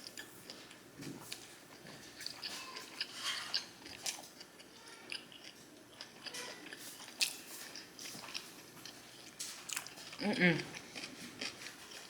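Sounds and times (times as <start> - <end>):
person chewing food: 0.0 - 12.0.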